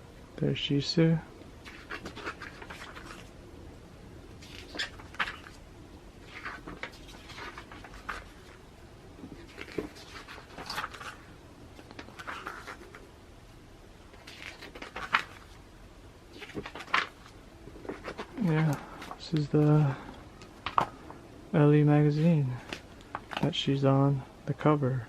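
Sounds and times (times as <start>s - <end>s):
magazine pages rustling: 1.6s - 3.4s, 4.4s - 5.6s, 6.2s - 13.1s, 14.0s - 15.7s, 16.3s - 21.2s, 22.1s - 23.8s.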